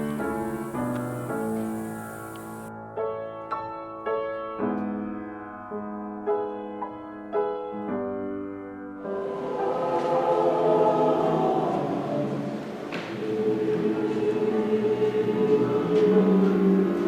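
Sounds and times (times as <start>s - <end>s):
gospel choir singing: 0.0s - 2.7s, 9.0s - 17.0s
slow piano notes: 0.0s - 17.0s.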